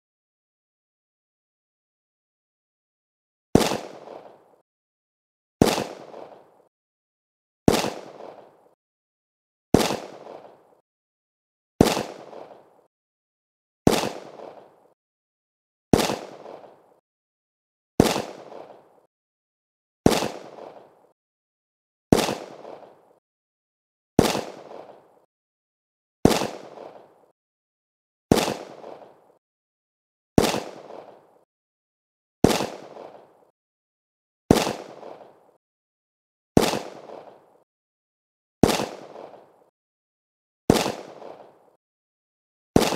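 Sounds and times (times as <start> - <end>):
handgun shots with echo: 3.6 - 4.4, 5.6 - 6.6, 7.7 - 8.6, 9.8 - 10.6, 11.8 - 12.7, 13.9 - 14.7, 15.9 - 16.8, 18.0 - 18.9, 20.1 - 21.1, 22.1 - 23.1, 24.2 - 25.2, 26.3 - 27.1, 28.3 - 29.3, 30.4 - 31.4, 32.4 - 33.4, 34.5 - 35.4, 36.6 - 37.4, 38.6 - 39.6, 40.7 - 41.7.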